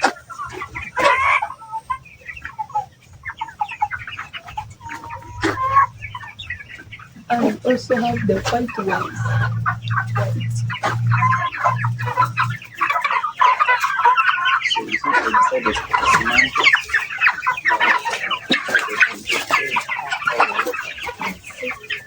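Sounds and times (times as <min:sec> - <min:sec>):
chickens clucking: 0:00.0 - 0:22.0
low pulsing hum: 0:07.6 - 0:12.8.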